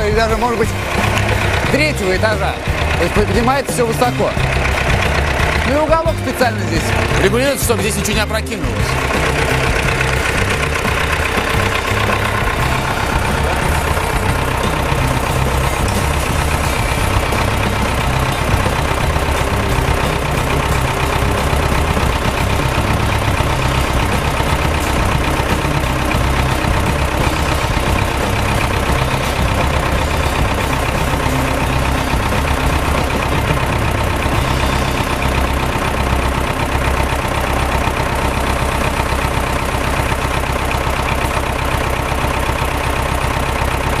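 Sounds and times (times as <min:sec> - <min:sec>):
forklift diesel engine running: 0:00.0 - 0:44.0.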